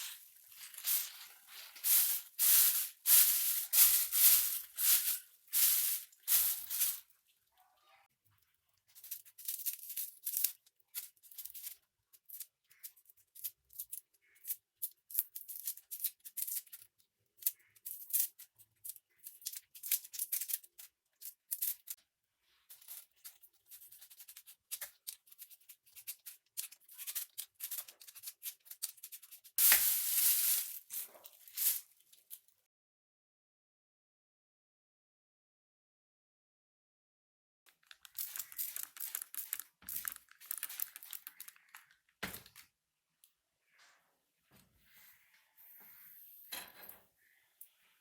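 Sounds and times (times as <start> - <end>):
rustling and scrubbing strokes: 0.0 - 7.1, 28.8 - 31.9.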